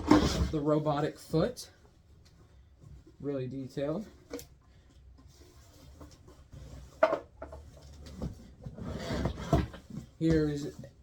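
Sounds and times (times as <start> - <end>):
rustling and shuffling: 0.0 - 11.0.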